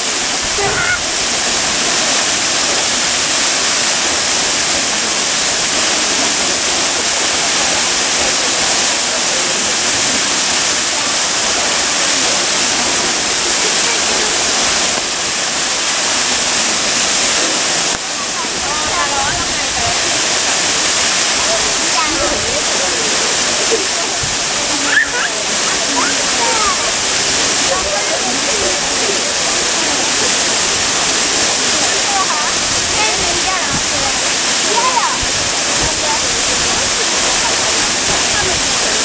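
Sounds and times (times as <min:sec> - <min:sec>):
waterfall rushing: 0:00.0 - 0:39.0.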